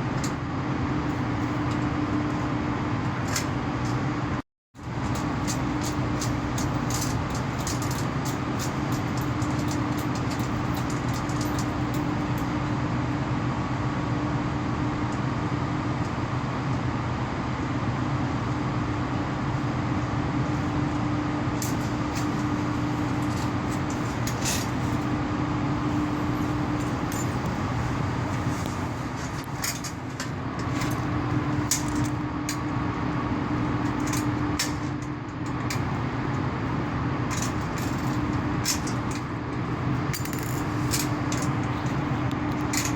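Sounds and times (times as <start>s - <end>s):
power cables humming: 20.5s - 42.9s.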